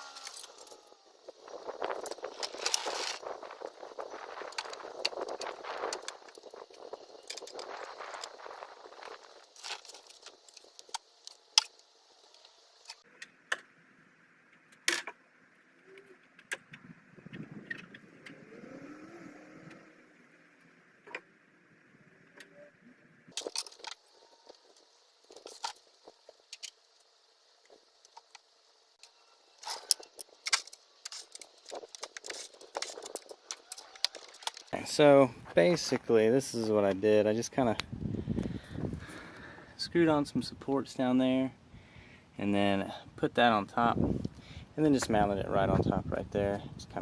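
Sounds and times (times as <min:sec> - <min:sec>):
faint steady hiss: 0:18.2 - 0:47.0.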